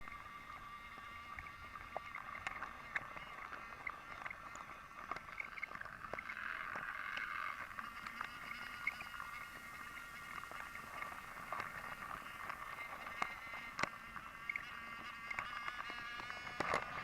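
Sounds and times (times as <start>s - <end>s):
toy train motor whining: 0.0s - 17.0s
wheels clicking on wooden track: 0.0s - 17.0s.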